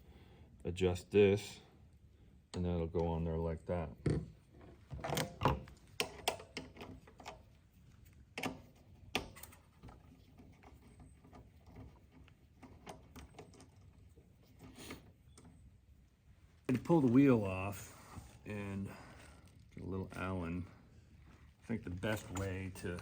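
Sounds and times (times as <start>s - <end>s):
clicks and knocks of tools: 4.0s - 7.4s, 22.0s - 23.0s.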